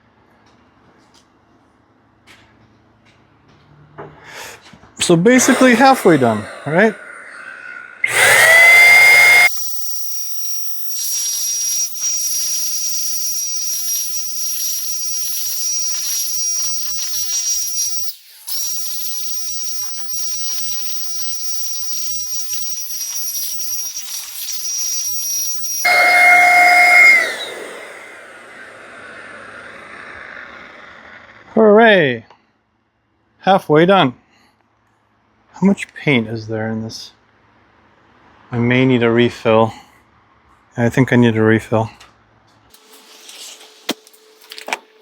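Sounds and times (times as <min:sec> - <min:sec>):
paint sprayer hissing: 0:05.3 - 0:07.3, 0:08.0 - 0:09.5
sprayer motor whine: 0:05.3 - 0:09.7, 0:25.8 - 0:31.6.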